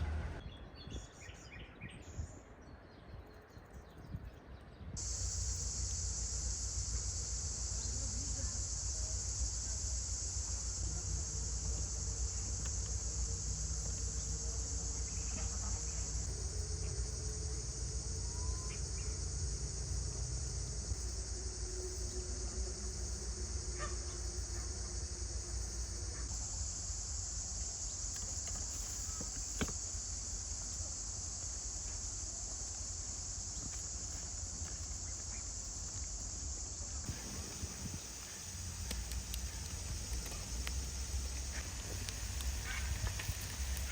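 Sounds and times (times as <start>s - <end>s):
high-pitched insect chorus: 5.0s - 43.9s
faint clicks: 37.1s - 43.9s.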